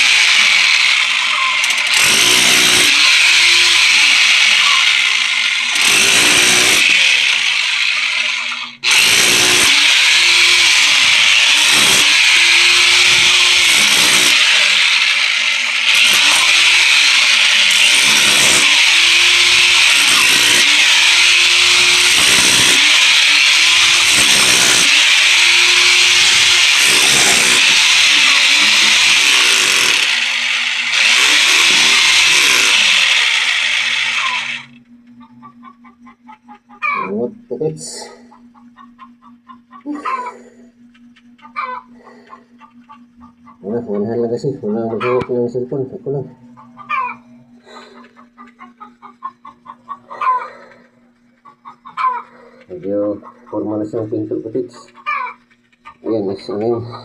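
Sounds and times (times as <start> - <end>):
electric chipping hammer: 0.0 - 34.8.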